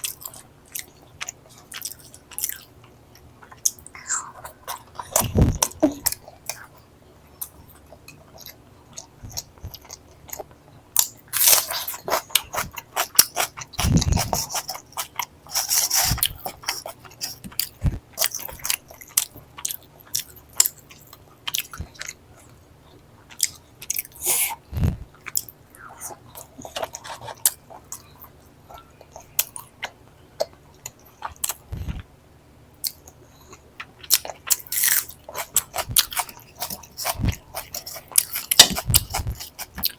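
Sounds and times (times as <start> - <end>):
close chewing and biting: 7.4 - 22.2, 32.8 - 39.9.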